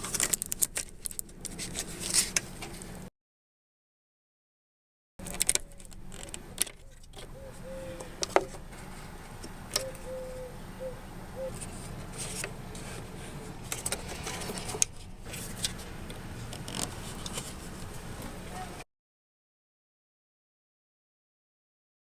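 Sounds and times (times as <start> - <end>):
steady low hum: 5.2 - 18.8
car engine idling: 6.8 - 18.8.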